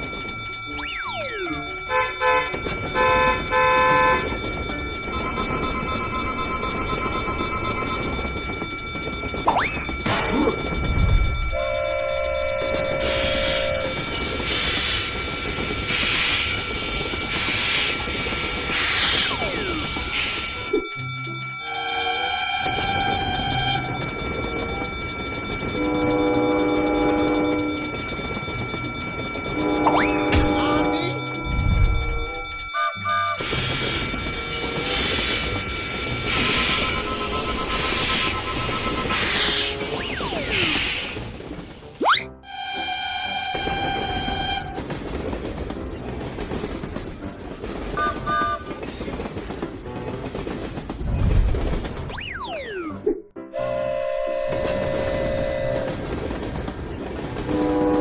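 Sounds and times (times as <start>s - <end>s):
wheels clacking on rail joints: 0.0s - 42.0s, 42.6s - 52.7s, 54.0s - 58.0s
train rumbling: 0.0s - 52.9s, 53.5s - 58.0s
train horn blasts: 1.9s - 4.2s, 53.5s - 56.0s, 57.5s - 58.0s.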